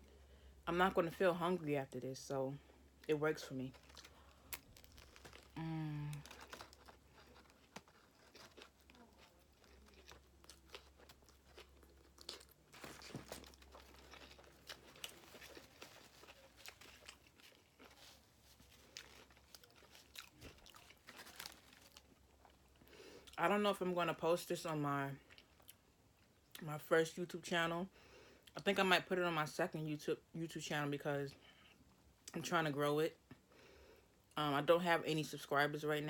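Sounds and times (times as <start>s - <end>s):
chewing crunching: 3.7s - 23.4s.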